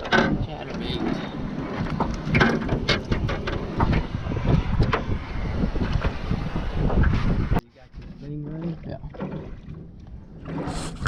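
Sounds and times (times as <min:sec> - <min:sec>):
wind buffeting microphone: 0:00.0 - 0:11.0
water splashes: 0:07.9 - 0:11.0.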